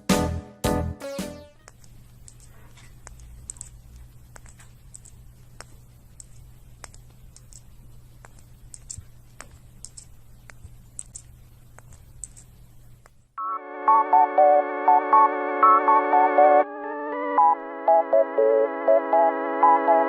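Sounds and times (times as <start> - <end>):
low steady hum: 1.5 - 13.4
light clicks and taps: 1.6 - 13.2.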